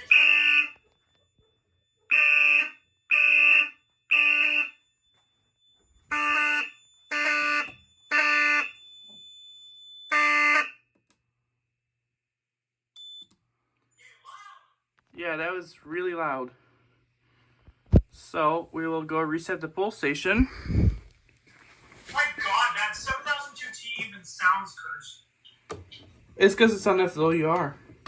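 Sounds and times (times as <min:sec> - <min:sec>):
buzzy fire alarm horn blasts: 0:00.0 - 0:05.1, 0:06.0 - 0:10.9.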